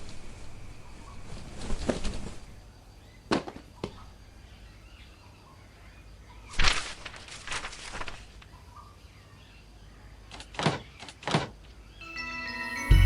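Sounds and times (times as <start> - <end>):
faint birdsong: 0.0 - 13.0.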